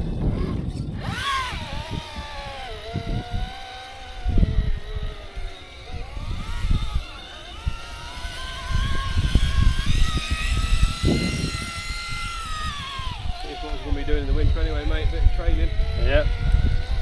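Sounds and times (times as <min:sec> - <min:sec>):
rc car motor and gear whine: 0:00.0 - 0:17.0.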